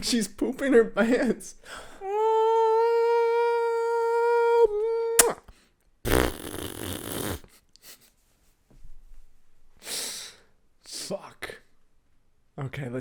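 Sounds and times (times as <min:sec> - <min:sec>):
fart noise with low flutter: 0:06.1 - 0:07.5.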